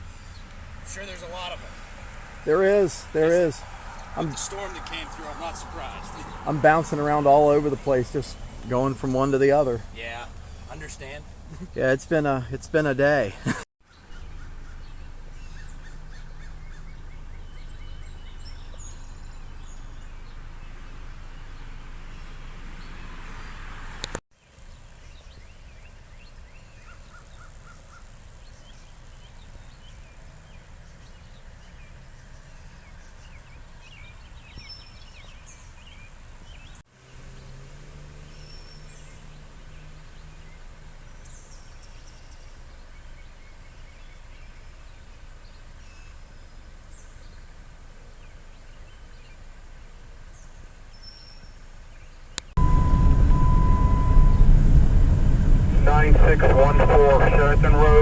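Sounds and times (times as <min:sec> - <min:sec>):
birds chirping: 0:00.0 - 0:23.0, 0:52.4 - 0:58.0
steady low hum: 0:52.6 - 0:58.0.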